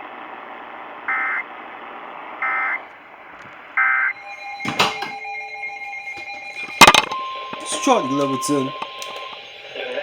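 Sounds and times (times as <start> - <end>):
radio hiss: 6.8 - 10.0.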